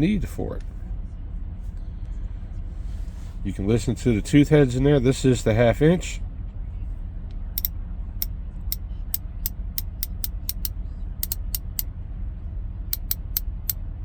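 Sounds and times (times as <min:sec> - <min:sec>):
steady low hum: 0:08.7 - 0:11.9, 0:13.0 - 0:13.8
ratchet pawl clicking: 0:09.8 - 0:11.8, 0:13.0 - 0:13.8.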